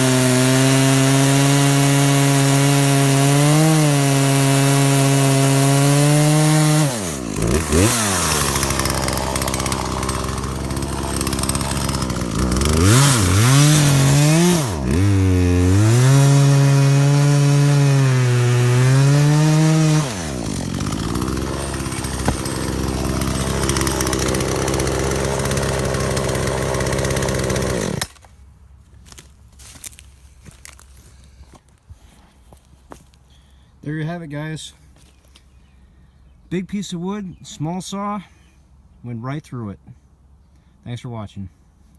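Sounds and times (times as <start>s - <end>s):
chainsaw cutting a log: 0.0s - 28.3s.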